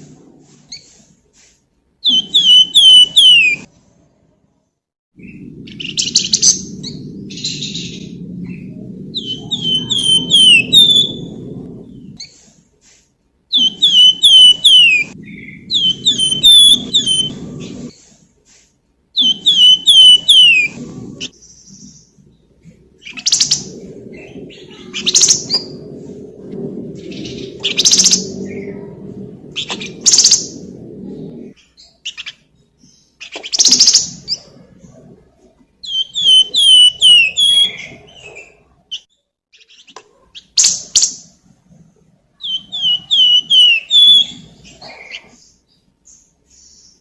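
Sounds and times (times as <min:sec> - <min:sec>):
songbird whistling song: 0:02.0 - 0:03.7, 0:05.2 - 0:12.4, 0:13.5 - 0:17.9, 0:19.2 - 0:22.1, 0:31.6 - 0:34.5, 0:35.8 - 0:41.2, 0:42.4 - 0:45.4
low steady rumble: 0:05.2 - 0:13.5, 0:15.0 - 0:17.9, 0:20.7 - 0:31.6
scratchy chattering bird notes: 0:05.7 - 0:11.4, 0:13.6 - 0:17.9, 0:36.0 - 0:38.0.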